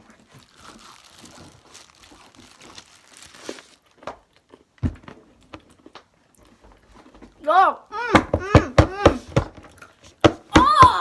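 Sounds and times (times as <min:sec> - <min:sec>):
plastic wrapper crinkling: 0:00.0 - 0:04.8.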